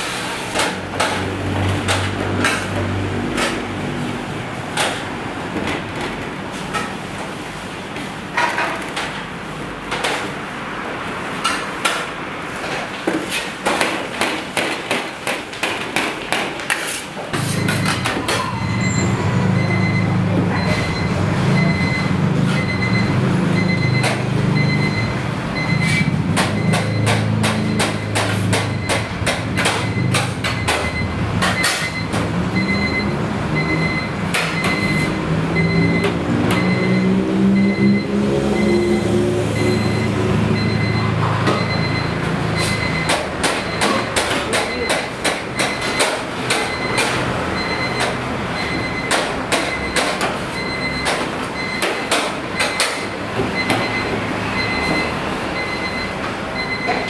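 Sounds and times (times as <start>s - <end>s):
low engine drone: 35.2s - 42.3s.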